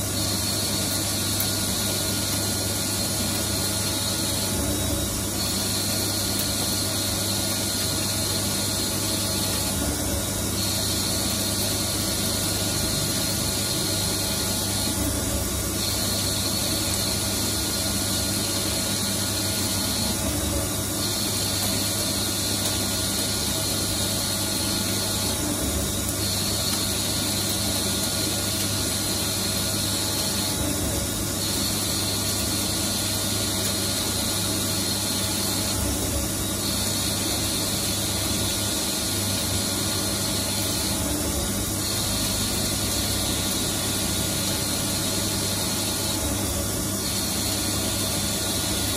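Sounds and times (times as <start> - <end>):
high machine whine: 0.0 - 48.9
lathe machine hum: 0.0 - 48.9.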